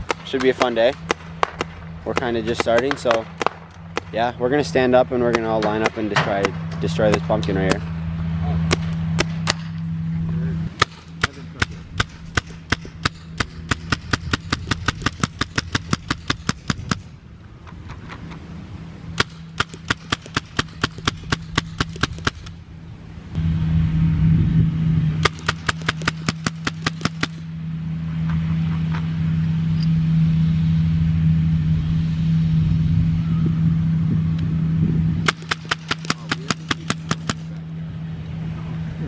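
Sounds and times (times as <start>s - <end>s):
paintball guns firing: 0.0s - 8.0s, 8.6s - 9.8s, 10.8s - 18.2s, 19.2s - 22.6s, 25.2s - 27.5s, 35.2s - 37.6s
steady low hum: 0.0s - 39.0s.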